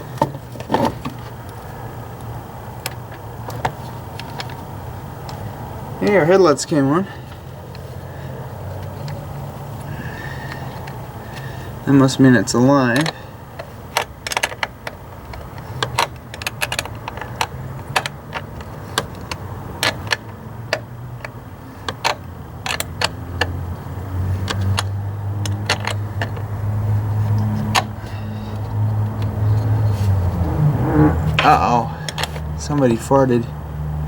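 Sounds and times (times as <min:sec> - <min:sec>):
low steady hum: 0:26.4 - 0:33.5.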